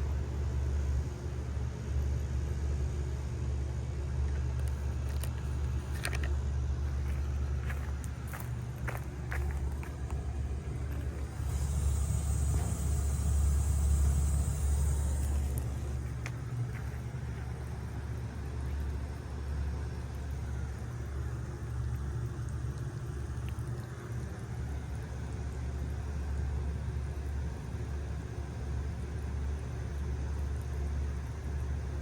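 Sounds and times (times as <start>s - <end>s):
heat pump humming: 0.0s - 32.0s
high hiss: 11.2s - 16.0s.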